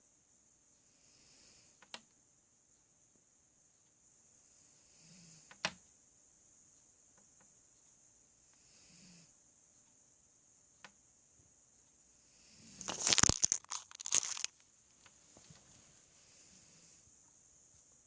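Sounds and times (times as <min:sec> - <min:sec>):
puppy snoring: 0:08.6 - 0:09.3
loud crackling rustling: 0:12.8 - 0:14.6.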